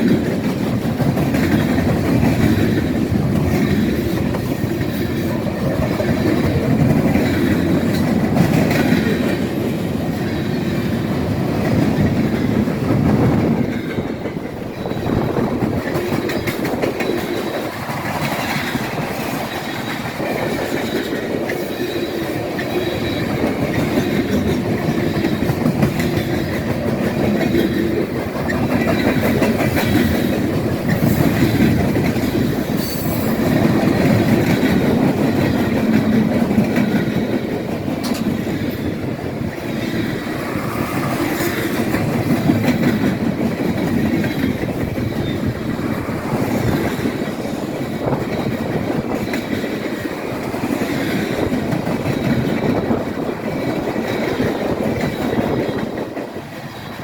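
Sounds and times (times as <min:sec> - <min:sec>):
wheels clacking over rail joints: 0:00.0 - 0:57.0
faint high wheel squeal: 0:14.7 - 0:15.6.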